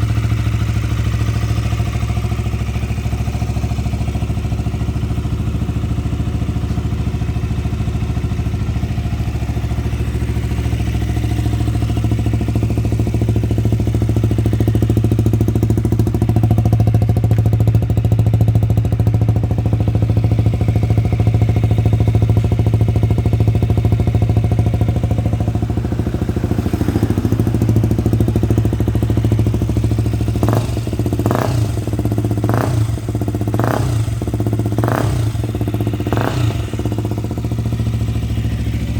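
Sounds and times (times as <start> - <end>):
motorcycle engine idling: 0.0 - 38.9
engine revving in sharp bursts: 34.8 - 35.4.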